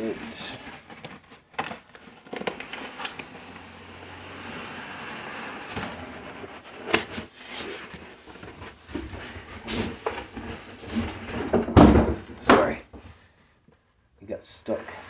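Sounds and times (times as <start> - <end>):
knocks and bumps from handling: 8.5 - 13.0.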